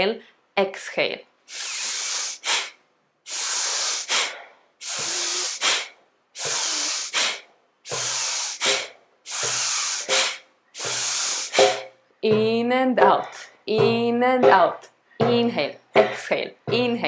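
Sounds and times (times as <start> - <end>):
forceful rhythmic breathing: 1.5 - 12.0.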